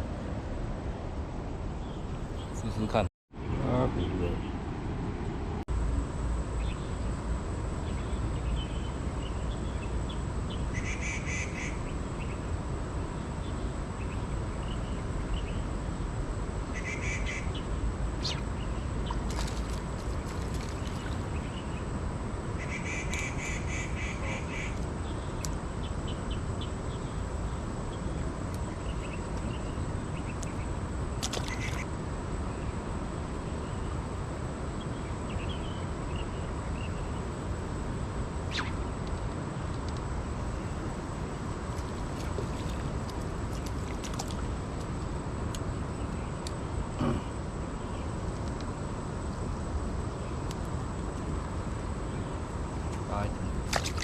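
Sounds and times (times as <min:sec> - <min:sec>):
bird calls: 0:07.9 - 0:12.4, 0:16.7 - 0:21.9, 0:22.6 - 0:27.7, 0:28.6 - 0:31.9, 0:38.4 - 0:38.8.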